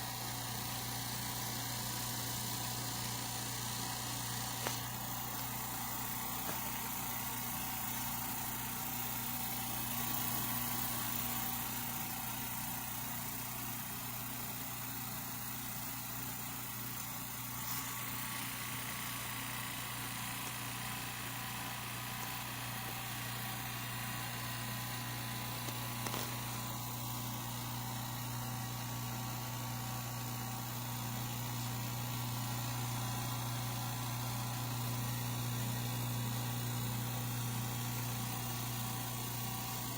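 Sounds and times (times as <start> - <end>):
air compressor humming: 0.0 - 39.9.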